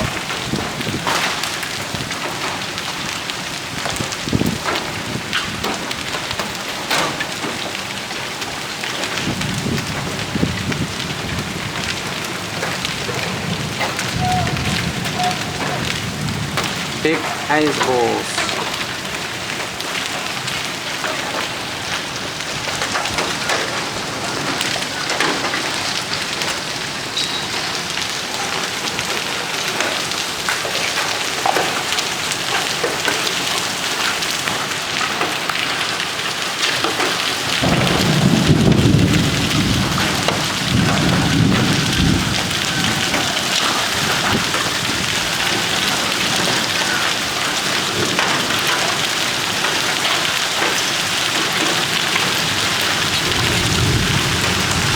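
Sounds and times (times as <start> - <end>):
heavy rain and hail: 0.0 - 54.9
thunder rumble: 9.2 - 19.1, 37.6 - 46.8, 51.3 - 54.9.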